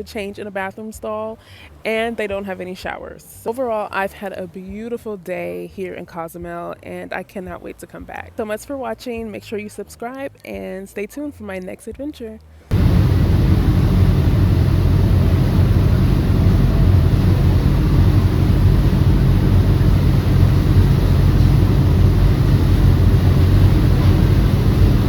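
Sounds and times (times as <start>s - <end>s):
low engine drone: 12.7s - 25.0s
rushing noise: 12.7s - 25.0s.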